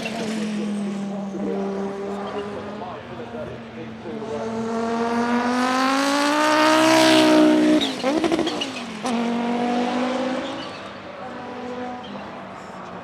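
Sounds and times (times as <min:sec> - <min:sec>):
race car engine accelerating: 0:00.0 - 0:13.0.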